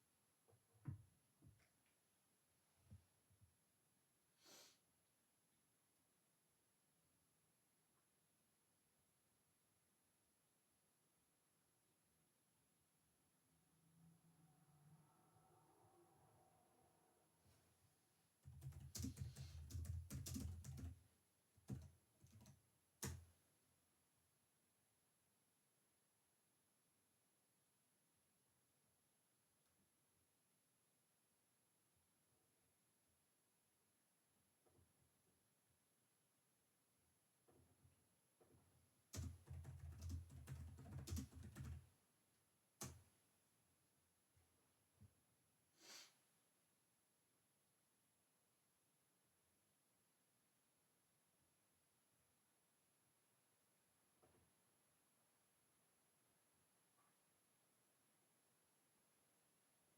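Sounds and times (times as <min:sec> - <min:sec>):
keyboard clicks: 0:18.4 - 0:21.0, 0:21.6 - 0:23.3, 0:39.1 - 0:41.8
typing on computer keyboard: 0:18.4 - 0:21.0, 0:21.6 - 0:23.3, 0:39.1 - 0:41.9, 0:42.8 - 0:43.1.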